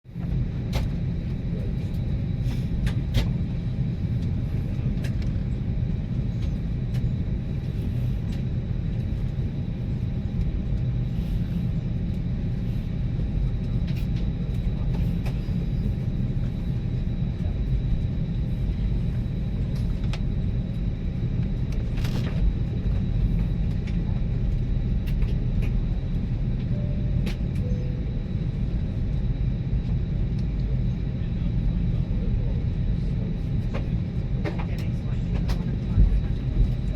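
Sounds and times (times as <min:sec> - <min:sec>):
aircraft cabin rumble: 0:00.1 - 0:36.9.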